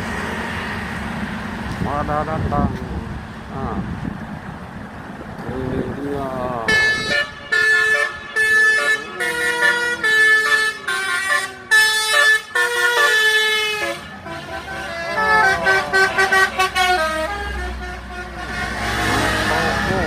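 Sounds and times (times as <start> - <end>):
musical bus air horn: 6.7 - 20.0.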